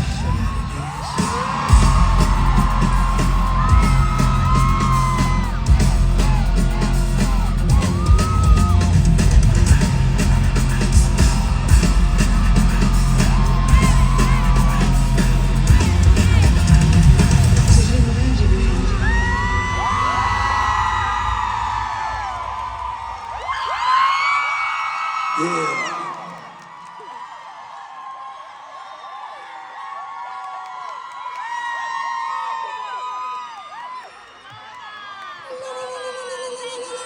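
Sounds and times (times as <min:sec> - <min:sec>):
heavy bass line: 0:00.0 - 0:23.5
live hip-hop music: 0:00.0 - 0:23.9
crowd screaming and whooping: 0:00.0 - 0:37.0.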